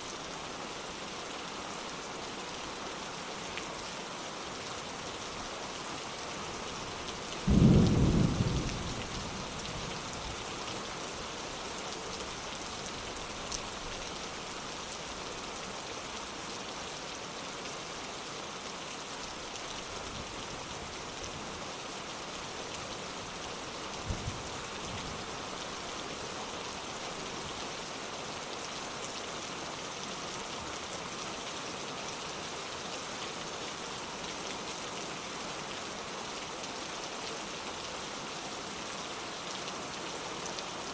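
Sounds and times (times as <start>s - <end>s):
thunder clap and rumble: 7.5s - 9.2s.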